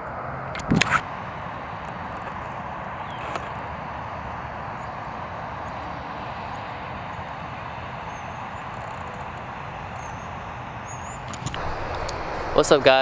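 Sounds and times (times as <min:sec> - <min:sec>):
low rumble: 0:11.6 - 0:13.0.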